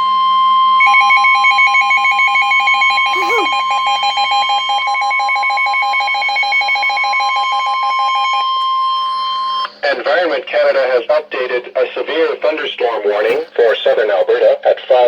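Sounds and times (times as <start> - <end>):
steady high alarm tone: 0.0 - 9.8
fast warbling alert signal: 0.8 - 7.4.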